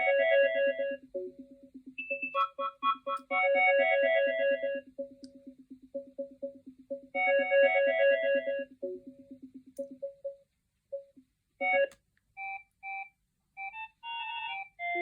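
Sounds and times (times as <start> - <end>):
pulsing electronic ringtone: 0.0 - 10.4
ringtone with short even notes: 0.0 - 10.4.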